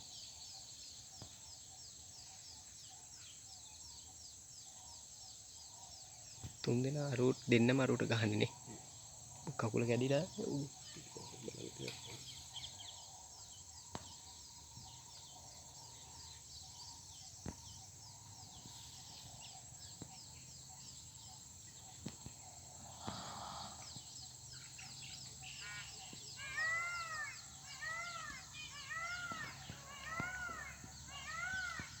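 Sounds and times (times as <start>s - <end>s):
birds calling: 0.0s - 32.0s
bird rising and falling call: 25.6s - 32.0s.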